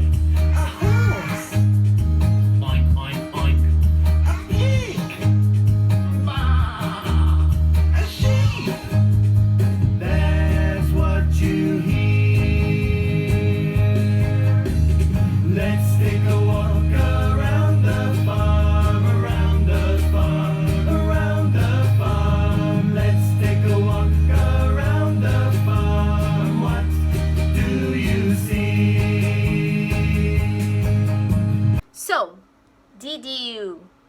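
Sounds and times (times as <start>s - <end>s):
acoustic guitar: 0.0s - 31.8s
steady bass beat: 0.0s - 31.8s
person singing: 0.4s - 1.6s, 6.2s - 9.0s, 10.0s - 31.3s
children's song: 6.3s - 9.0s, 10.0s - 31.3s.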